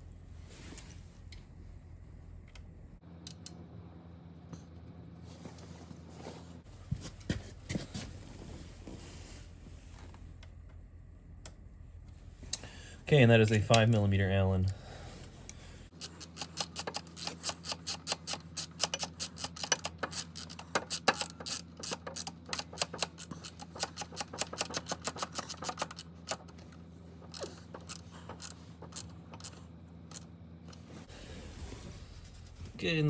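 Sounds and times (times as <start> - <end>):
hand ratchet clicking: 15.9 - 26.6.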